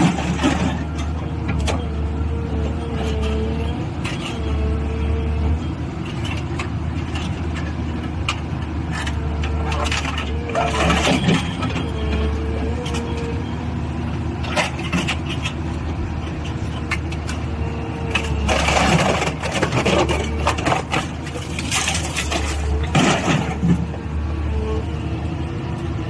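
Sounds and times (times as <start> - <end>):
metal crunching and clanking: 0.0 - 1.8, 6.0 - 13.1, 18.1 - 24.2.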